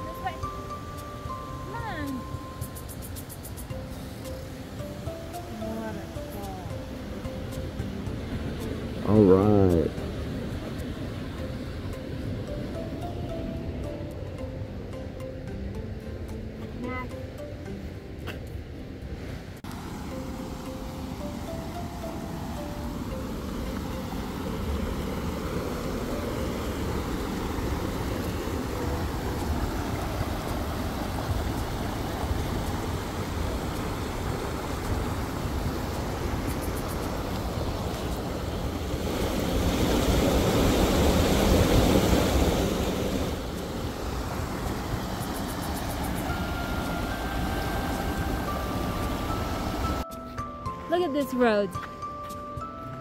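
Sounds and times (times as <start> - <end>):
vehicle road noise rumble: 17.9 - 50.1.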